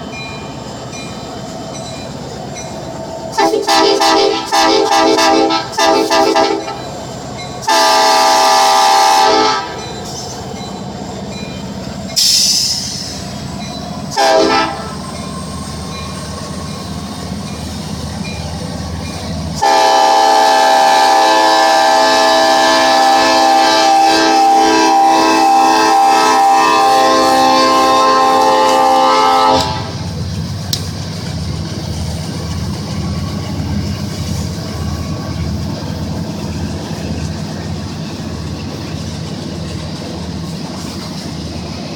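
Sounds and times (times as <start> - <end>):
train rumbling past: 0.0 - 41.9
train horn blowing: 3.3 - 6.8, 7.6 - 9.8, 14.1 - 15.0, 19.6 - 30.0
wheels clicking over rail joints: 29.5 - 41.9.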